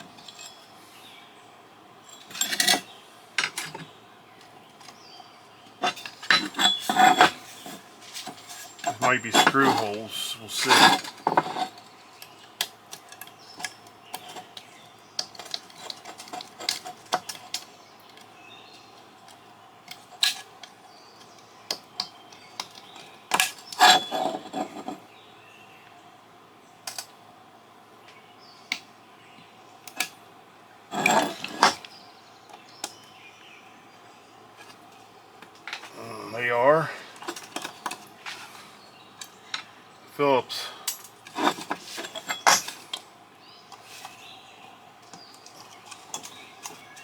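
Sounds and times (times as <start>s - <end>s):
short scraping sounds: 5.8s - 11.8s.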